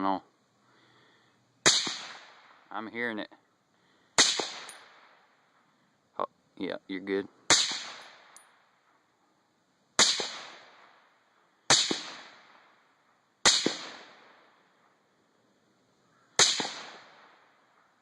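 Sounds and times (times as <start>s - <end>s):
suppressed rifle shots: 1.6s - 2.6s, 4.2s - 5.3s, 7.5s - 9.0s, 10.0s - 15.0s, 16.4s - 18.0s.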